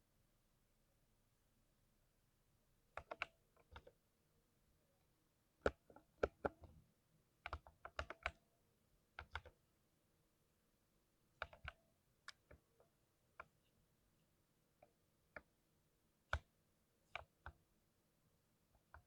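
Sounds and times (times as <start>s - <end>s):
mechanical keyboard typing: 3.0s - 3.9s, 7.4s - 8.4s, 11.4s - 12.6s.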